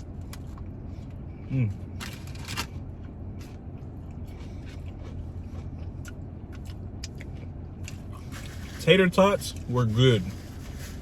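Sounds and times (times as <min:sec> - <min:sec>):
steady low hum: 0:00.0 - 0:11.0
person chewing food: 0:02.6 - 0:08.7.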